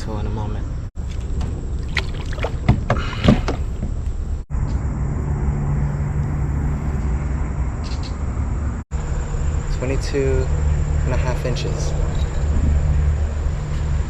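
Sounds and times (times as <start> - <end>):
knocks and rattles in boat: 1.0 - 4.4
water noise: 1.0 - 4.4.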